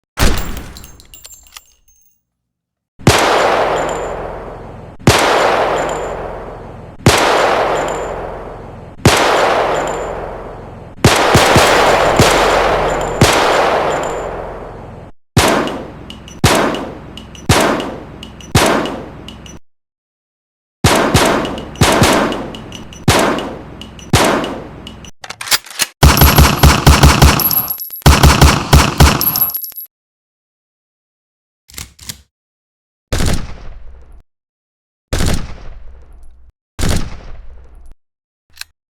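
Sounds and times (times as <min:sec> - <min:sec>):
gunshots with echoing tail: 0:03.0 - 0:14.8, 0:15.4 - 0:18.0, 0:20.8 - 0:22.5, 0:26.0 - 0:27.5
automatic gunfire bursts: 0:11.1 - 0:14.1, 0:26.0 - 0:27.5, 0:28.1 - 0:29.4.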